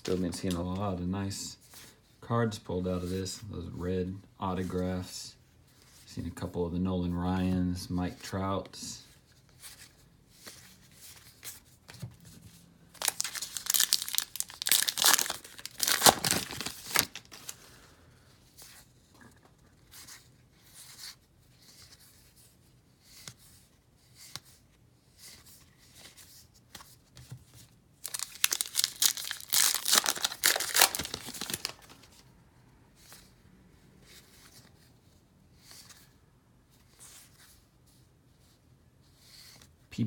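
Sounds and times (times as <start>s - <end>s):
card packs being torn open: 12.9s - 17.6s, 28.0s - 32.1s
wrappers crinkling: 12.9s - 17.6s, 28.0s - 32.2s.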